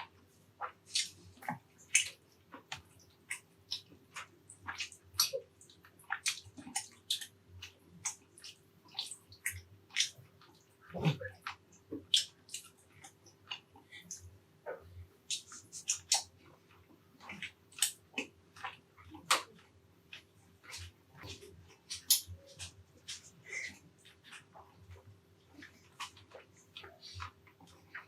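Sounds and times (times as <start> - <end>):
wet chewing and lip smacks: 0.6 - 28.0
gulp: 10.8 - 11.4.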